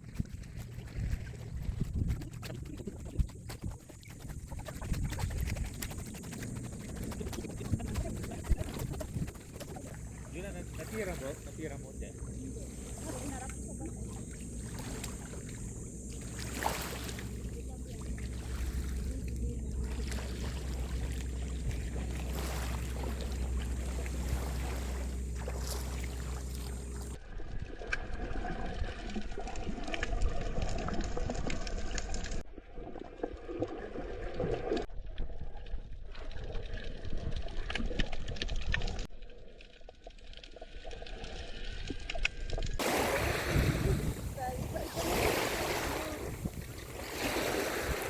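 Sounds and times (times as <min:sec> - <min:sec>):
steady low hum: 0:00.0 - 0:27.2, 0:42.8 - 0:48.0
water sloshing and splashing: 0:00.0 - 0:48.0.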